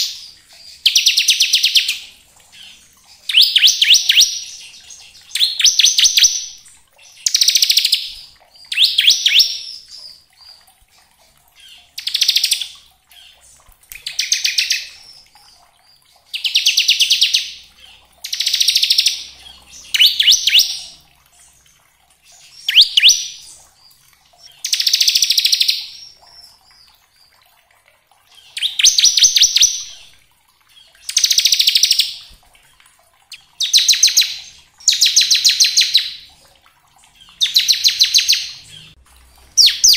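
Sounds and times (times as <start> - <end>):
bird singing high trills: 18.3 - 21.0, 22.5 - 23.6.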